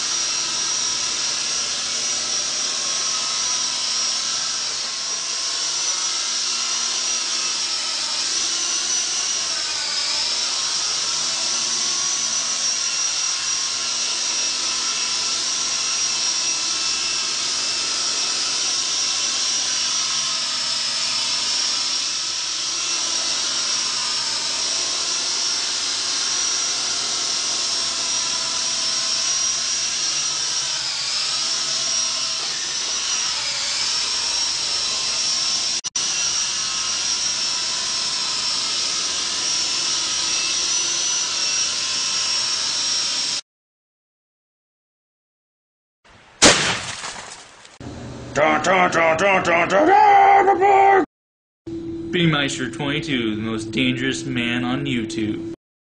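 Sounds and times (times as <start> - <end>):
toy helicopter motors whining: 0.0 - 43.4.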